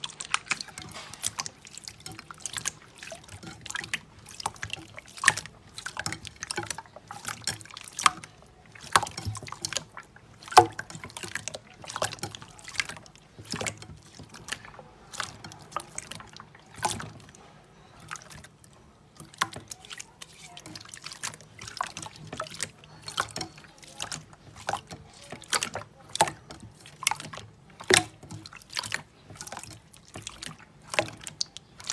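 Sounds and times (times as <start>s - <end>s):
slime wet clicks and squelches: 0.0s - 31.9s.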